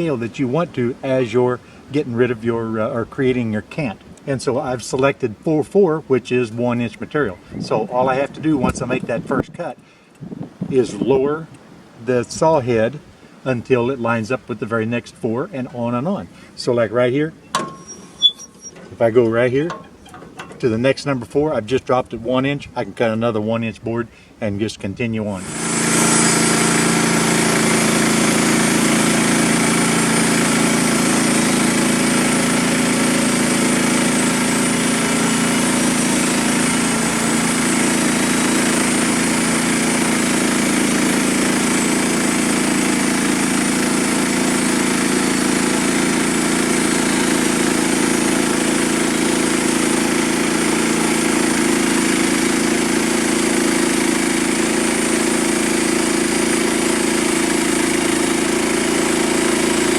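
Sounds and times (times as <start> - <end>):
gas engine running steadily: 25.4 - 59.9.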